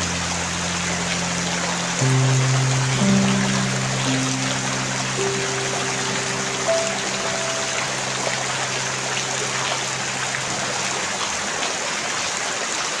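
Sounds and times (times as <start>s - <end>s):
soft piano notes: 0.0s - 12.4s
steady rain falling: 0.0s - 13.0s.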